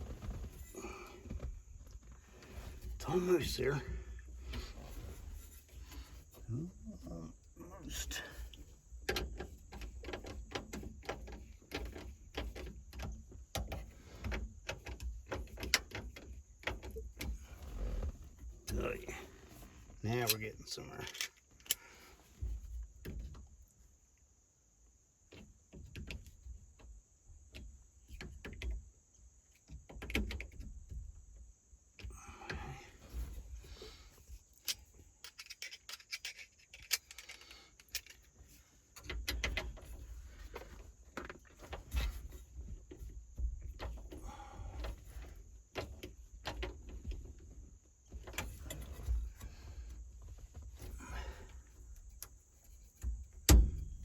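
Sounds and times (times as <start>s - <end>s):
clicks and knocks of hand work: 8.6s - 17.4s, 34.6s - 43.0s.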